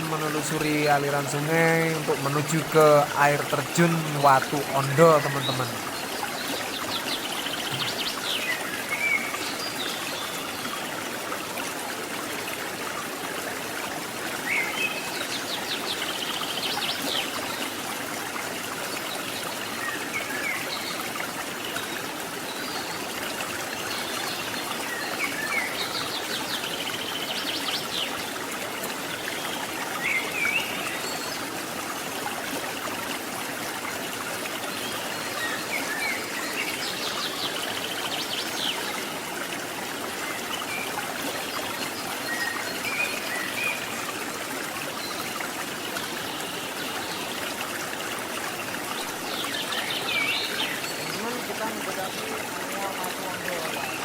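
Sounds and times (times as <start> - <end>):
birds chirping: 0.0 - 6.0, 7.0 - 9.2
river flowing over rocks: 0.0 - 15.5.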